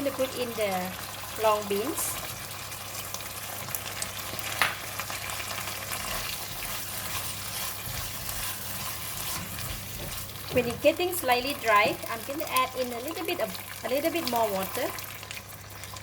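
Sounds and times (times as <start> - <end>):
vegetables sizzling in a pan: 0.0 - 16.0
scrape in a pan: 5.9 - 10.5.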